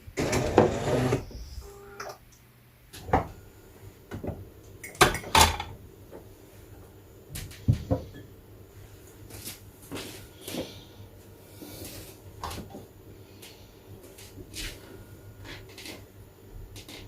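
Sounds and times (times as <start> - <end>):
faint tone: 1.4 - 2.2.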